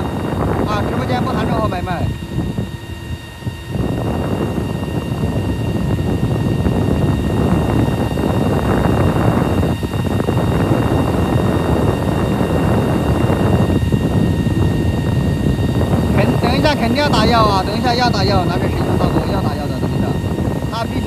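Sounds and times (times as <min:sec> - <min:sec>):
loud low rumbling noise: 0:03.4 - 0:21.0.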